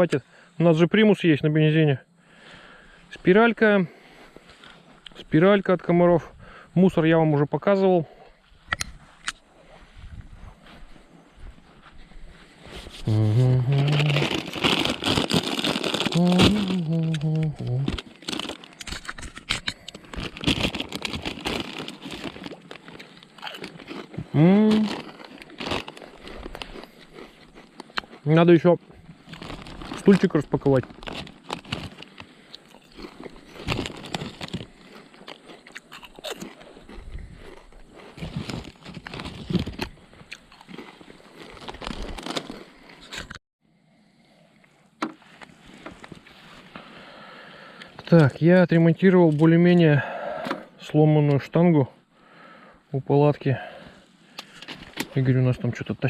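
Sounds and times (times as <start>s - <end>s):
camping gear rustling and knocking: 8.4s - 13.1s, 13.8s - 28.0s, 28.8s - 35.6s, 36.4s - 43.4s, 45.0s - 46.9s, 54.3s - 55.2s
short voiced sound: 16.2s - 17.8s.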